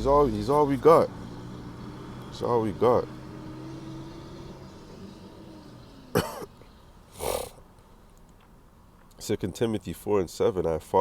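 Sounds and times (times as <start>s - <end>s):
man coughing: 6.2s - 6.6s.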